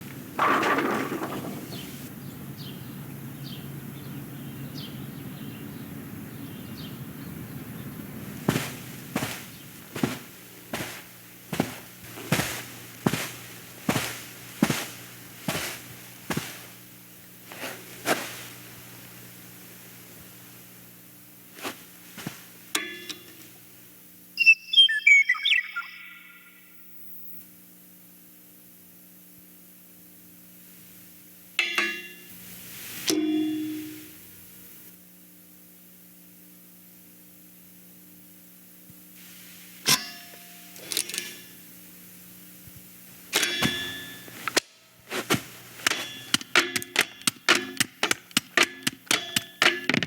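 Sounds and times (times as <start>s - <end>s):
low room hum: 0.0s - 50.0s
sharp footsteps: 8.1s - 19.2s, 21.6s - 22.6s, 43.4s - 50.0s.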